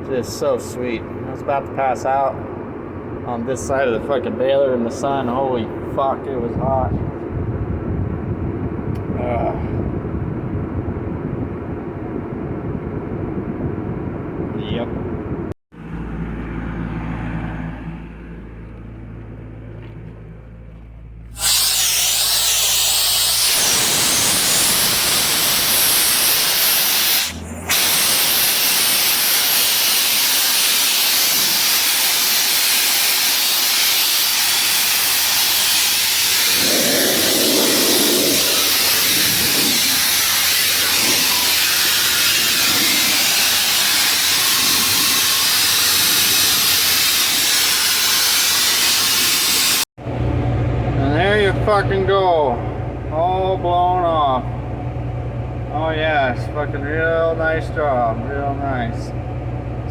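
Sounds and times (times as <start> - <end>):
compressed air hissing from blowgun: 21.3 - 49.9.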